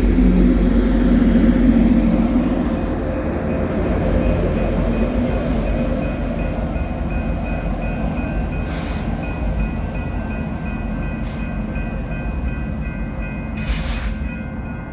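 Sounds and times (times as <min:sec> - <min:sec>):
freight train rumbling: 0:00.0 - 0:14.9
short hisses: 0:13.6 - 0:14.2.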